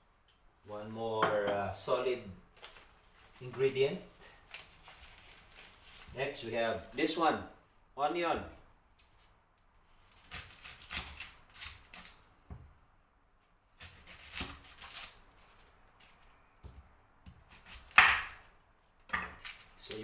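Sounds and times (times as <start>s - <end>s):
onion crackling: 2.5s - 7.2s, 9.8s - 12.3s, 13.8s - 16.4s.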